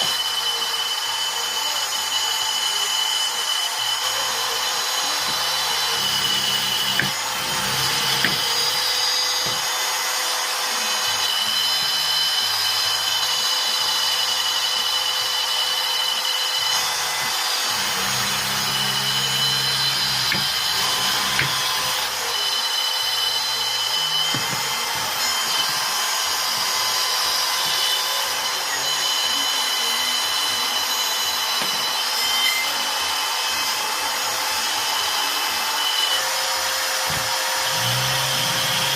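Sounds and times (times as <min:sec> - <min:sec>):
electric power tool on wood: 0:00.0 - 0:38.9.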